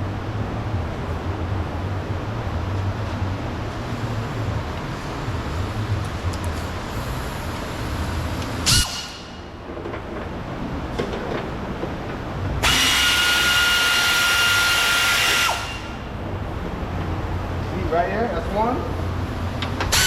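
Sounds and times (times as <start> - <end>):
cordless drill whining: 12.6 - 15.7.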